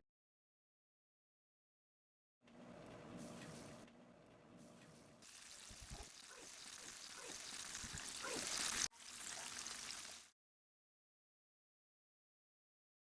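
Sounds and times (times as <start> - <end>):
chicken sizzling in hot oil: 5.2 - 10.4.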